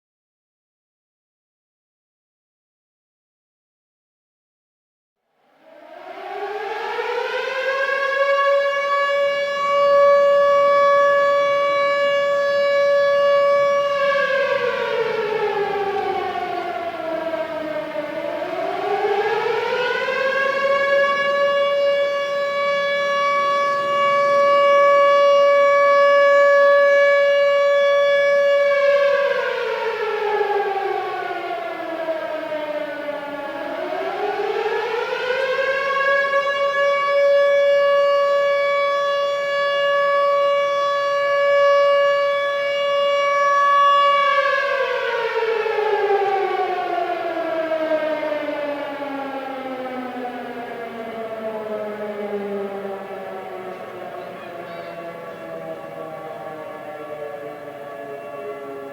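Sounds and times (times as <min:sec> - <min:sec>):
air-raid siren wailing: 0:05.4 - 0:58.9.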